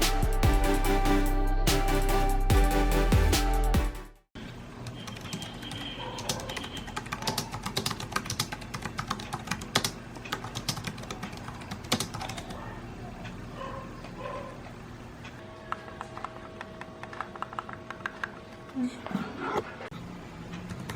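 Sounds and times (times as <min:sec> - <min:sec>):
typing on computer keyboard: 0:04.8 - 0:12.6, 0:15.7 - 0:18.4.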